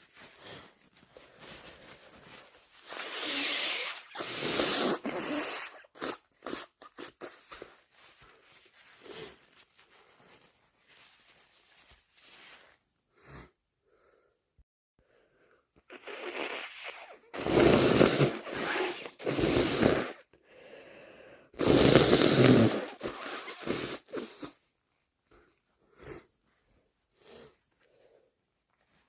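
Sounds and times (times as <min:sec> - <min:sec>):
person blowing congested nose: 0:00.2 - 0:09.4, 0:15.8 - 0:24.6.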